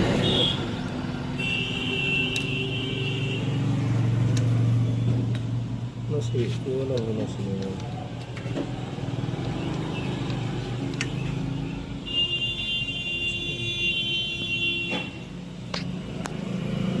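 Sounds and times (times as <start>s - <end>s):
sharp clicks: 6.5s - 11.4s.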